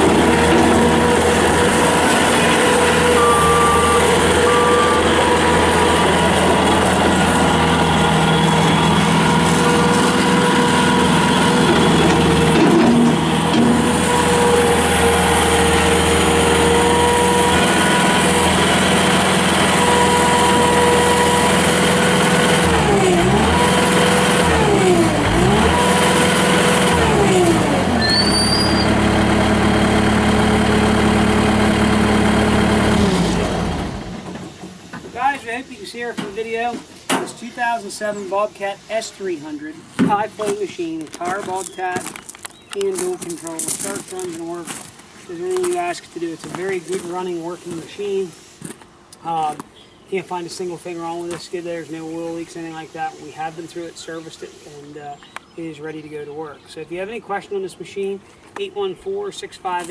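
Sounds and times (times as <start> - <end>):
diesel engine revving: 0.0 - 35.0.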